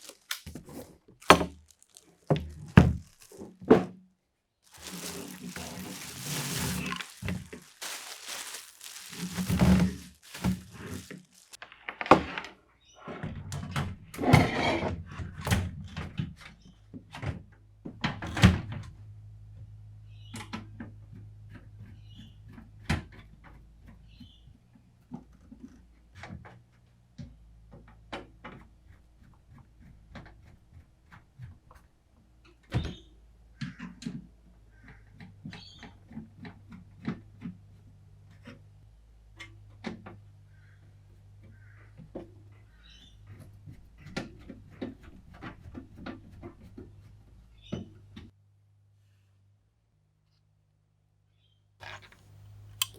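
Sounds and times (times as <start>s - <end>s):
rustling and scraping: 0.0s - 3.9s, 4.7s - 11.6s, 51.8s - 52.9s.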